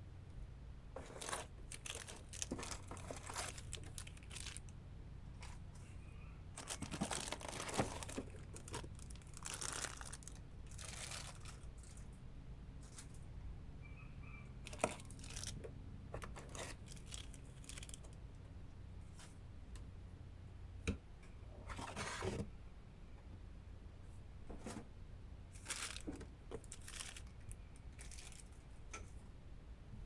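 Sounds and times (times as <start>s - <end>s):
packaging crinkling and tearing: 1.0s - 4.7s, 6.6s - 12.0s, 14.7s - 15.6s, 16.2s - 18.1s, 25.6s - 28.5s.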